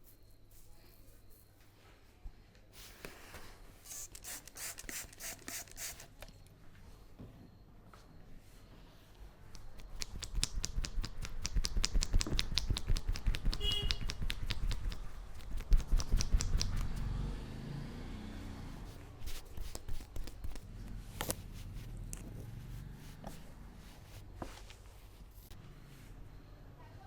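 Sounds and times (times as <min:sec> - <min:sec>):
hands rubbing a head: 0:09.8 - 0:16.9, 0:19.2 - 0:25.3
hands slapping on a head: 0:09.8 - 0:17.0.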